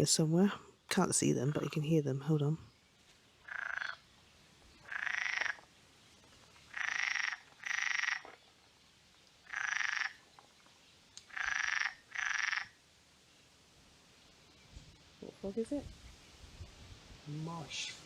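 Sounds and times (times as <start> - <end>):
frog croaking: 3.4 - 4.0, 4.8 - 5.7, 6.7 - 8.4, 9.4 - 10.2, 11.2 - 12.8.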